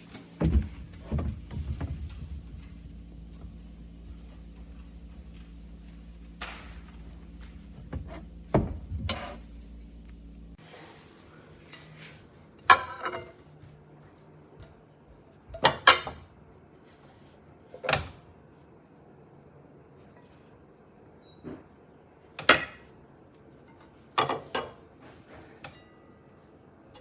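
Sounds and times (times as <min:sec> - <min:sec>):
steady low hum: 0:00.0 - 0:12.6.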